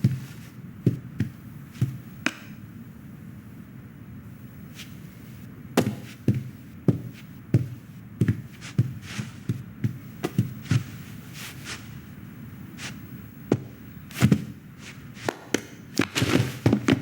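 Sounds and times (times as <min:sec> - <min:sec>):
short thumps with sharp taps: 0:05.8 - 0:10.9.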